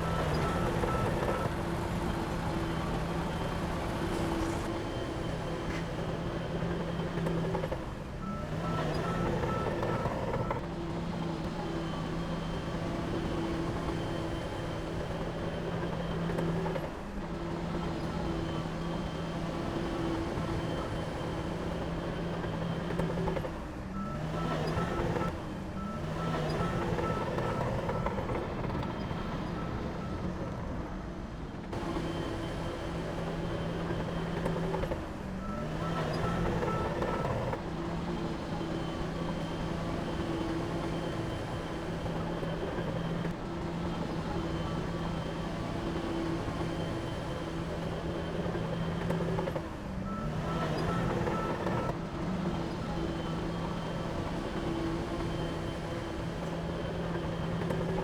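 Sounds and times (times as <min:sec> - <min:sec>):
reversing alarm beeping: 0:00.0 - 0:03.5, 0:08.2 - 0:10.6, 0:24.0 - 0:30.5, 0:31.8 - 0:43.4, 0:44.0 - 0:58.0
diesel machine running: 0:00.0 - 0:58.0.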